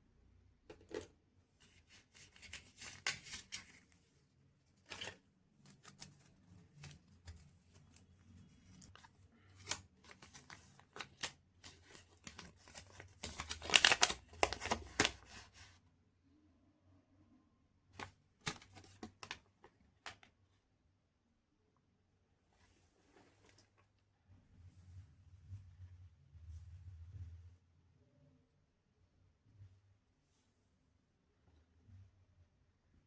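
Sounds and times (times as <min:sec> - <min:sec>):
wrapper tearing and crinkling: 0:08.6 - 0:15.5.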